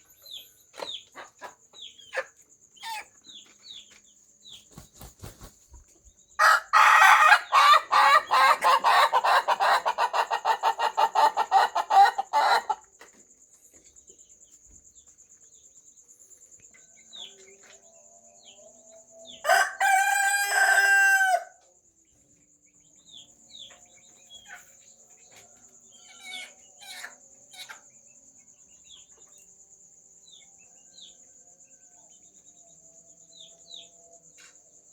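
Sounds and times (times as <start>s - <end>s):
small bird chirps: 0.0s - 6.4s
rooster crowing: 6.4s - 10.1s, 19.4s - 21.6s.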